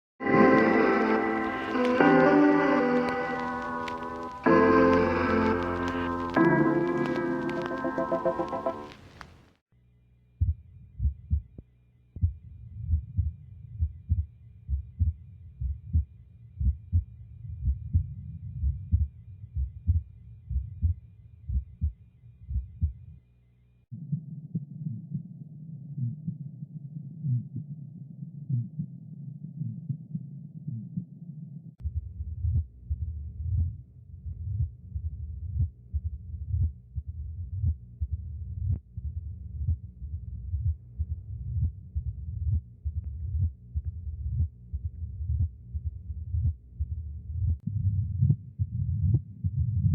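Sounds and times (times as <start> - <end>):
sharp regular heartbeats: 10.4 - 11.6, 12.2 - 23.1
low regular heartbeats: 10.4 - 23.2, 31.8 - 49.9.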